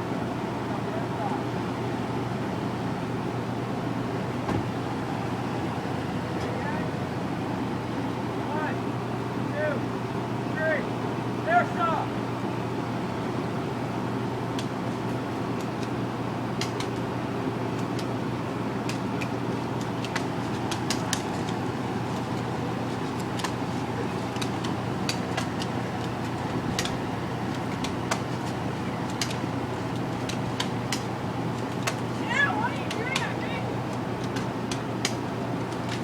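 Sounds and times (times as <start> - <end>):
low hum and rumble: 0.0 - 36.0.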